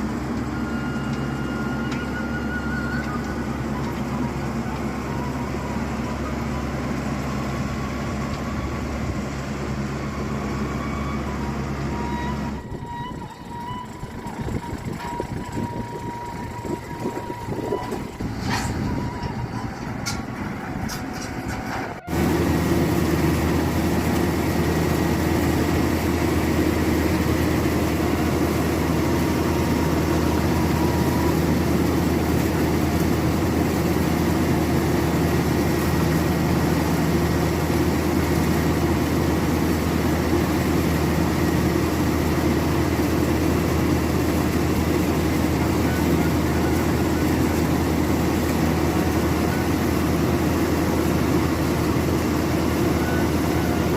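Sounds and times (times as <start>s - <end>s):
combine harvester droning: 0.0s - 53.9s.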